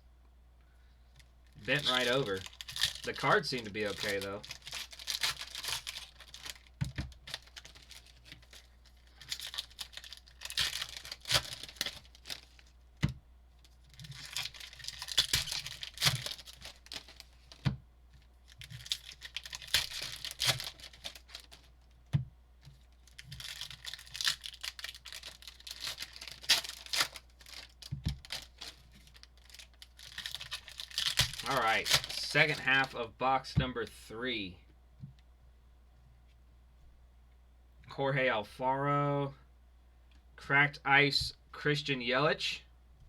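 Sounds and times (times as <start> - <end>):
wrappers crinkling: 1.4 - 12.8, 13.6 - 22.0, 22.6 - 33.0
card pack wrappers tearing open: 1.6 - 12.7, 13.8 - 17.7, 18.4 - 21.8, 23.0 - 32.9.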